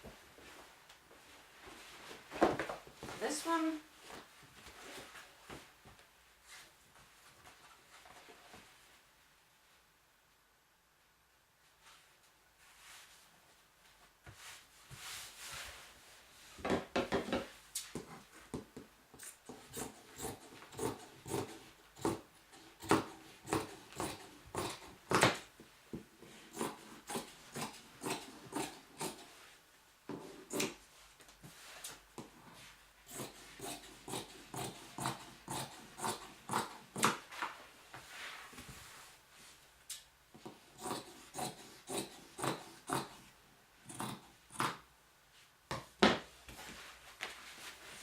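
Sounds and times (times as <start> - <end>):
scissors cutting fabric: 19.2 - 25.4, 26.2 - 29.4, 30.2 - 30.8, 33.1 - 37.2, 40.4 - 43.2, 43.8 - 44.8.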